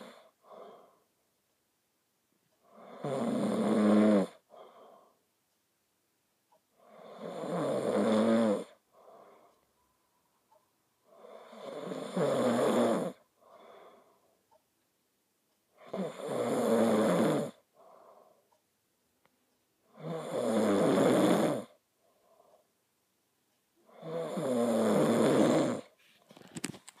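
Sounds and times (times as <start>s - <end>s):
person snoring: 0.0s - 1.0s, 2.6s - 5.2s, 6.8s - 9.5s, 11.1s - 14.1s, 15.8s - 17.6s, 19.9s - 21.8s, 23.9s - 26.0s
soft breath: 0.0s - 1.2s, 4.4s - 5.3s, 8.7s - 11.8s, 13.2s - 14.6s, 17.6s - 18.7s, 21.9s - 22.9s.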